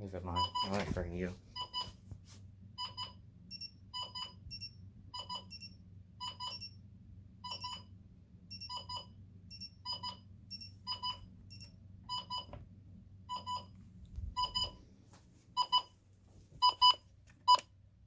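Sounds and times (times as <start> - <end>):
low steady hum: 0.0 - 18.0
alarm clocks beeping: 1.6 - 2.0, 2.8 - 6.8, 7.4 - 12.5, 13.3 - 13.8, 14.4 - 14.8, 15.6 - 16.0, 16.6 - 17.6.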